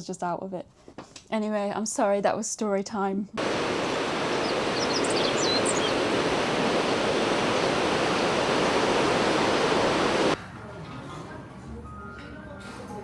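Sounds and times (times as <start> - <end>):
waterfall rushing: 3.4 - 10.4.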